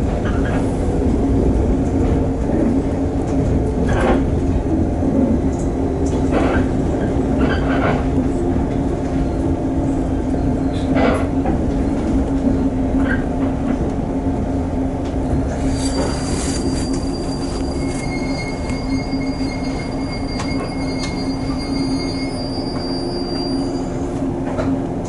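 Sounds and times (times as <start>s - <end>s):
train hum and wheel rumble: 0.0s - 25.0s
brake squeals: 15.5s - 24.1s.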